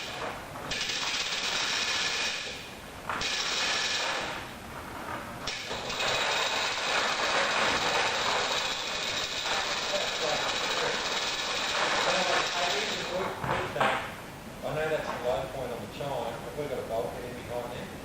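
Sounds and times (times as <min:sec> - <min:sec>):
pulley blocks ratcheting: 0:00.0 - 0:02.6, 0:03.2 - 0:04.4, 0:05.5 - 0:13.2.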